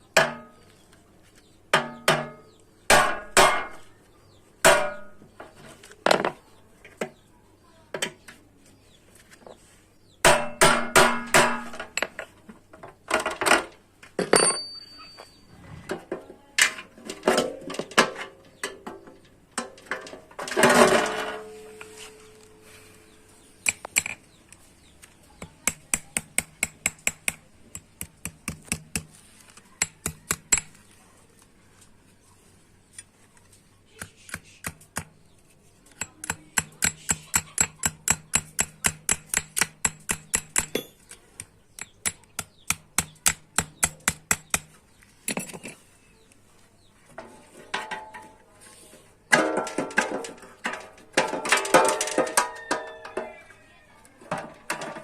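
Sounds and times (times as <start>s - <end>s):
hammer striking metal pan: 1.8s - 3.8s, 4.7s - 5.2s, 10.2s - 11.8s
metal ringing: 14.2s - 15.5s, 40.6s - 41.1s.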